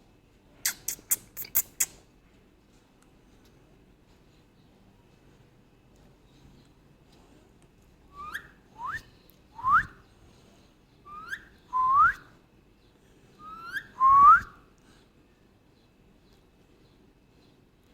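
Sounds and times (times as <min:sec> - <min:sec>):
parakeet whistling: 0:08.1 - 0:09.0, 0:11.1 - 0:12.1, 0:13.4 - 0:14.5.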